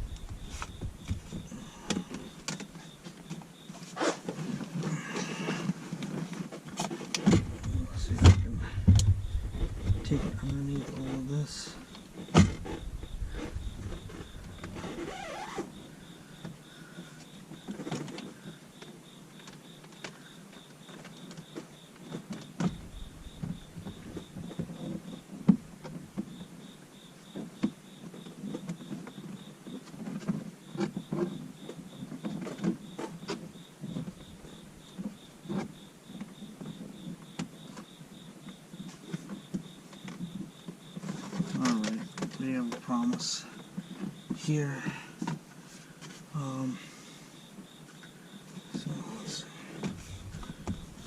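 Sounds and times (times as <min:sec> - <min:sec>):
faint high-pitched pulsing tone: 0:07.4 - 0:15.1
sharp knocks: 0:12.2 - 0:14.8, 0:49.8 - 0:51.0
wire rustling against plastic panels: 0:48.5 - 0:51.0.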